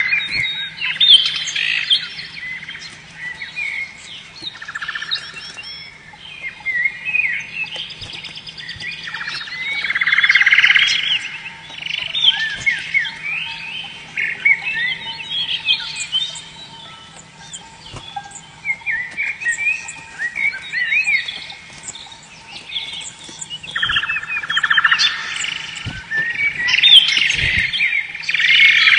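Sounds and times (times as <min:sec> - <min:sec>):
canary singing: 0:00.0 - 0:28.9
faint low hum: 0:00.0 - 0:28.9.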